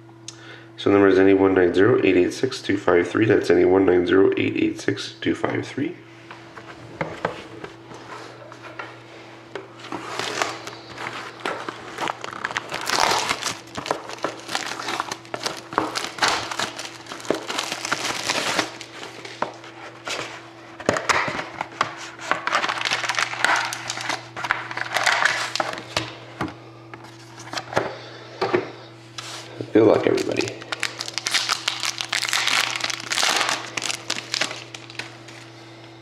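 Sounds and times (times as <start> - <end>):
plastic wrapping crinkling: 9.8 - 20.3, 22.2 - 25.9, 29.2 - 35.5
cardboard packaging tearing: 9.9 - 20.2, 22.4 - 25.8, 30.0 - 35.4.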